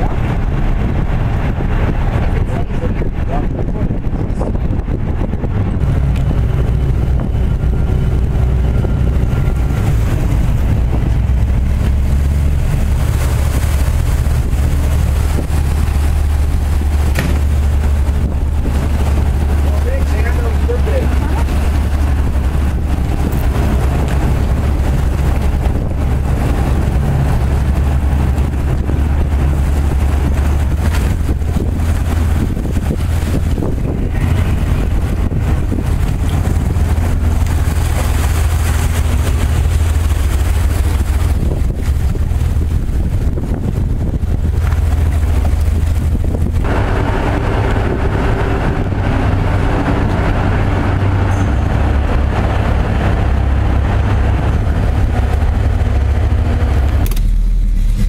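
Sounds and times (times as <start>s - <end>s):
large engine droning: 0.0s - 58.0s
wind noise on microphone: 0.0s - 58.0s.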